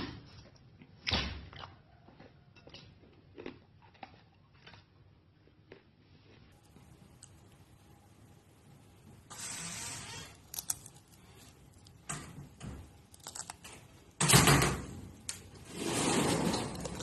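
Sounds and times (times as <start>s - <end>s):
crunchy bite: 13.1s - 13.7s.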